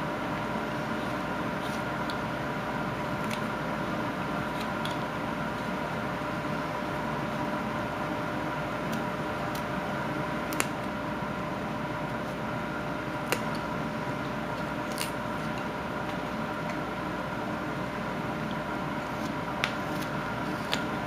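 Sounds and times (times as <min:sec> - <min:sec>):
background hum: 0:00.0 - 0:21.0
knife cutting wood: 0:19.0 - 0:21.0.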